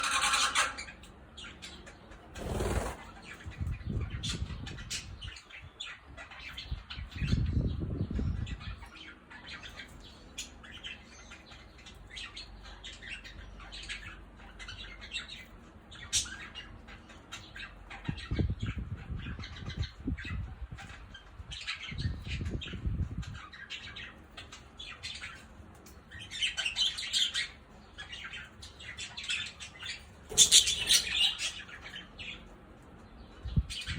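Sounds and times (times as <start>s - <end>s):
budgerigars chirping: 0.0s - 33.9s
wings flapping: 2.3s - 3.2s.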